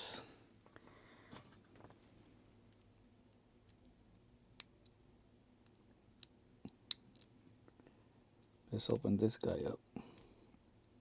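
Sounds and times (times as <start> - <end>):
faint sharp clicks of small parts: 5.6 - 9.2, 10.0 - 11.0.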